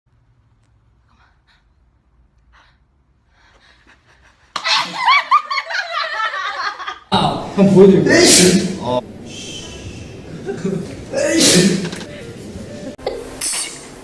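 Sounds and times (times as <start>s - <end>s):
person sneezing: 10.5s - 12.1s.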